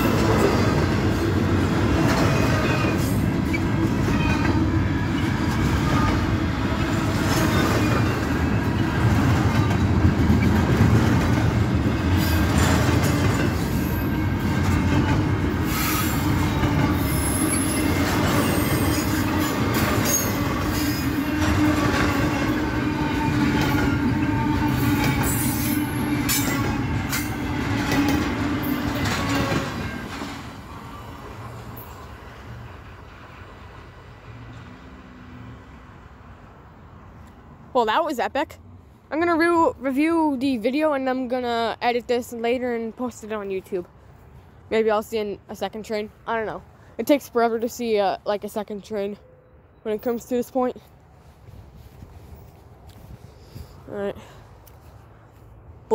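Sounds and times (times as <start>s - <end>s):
train wheels rumbling on rails: 0.0s - 35.4s
wheel squeals and clicks: 16.9s - 22.3s.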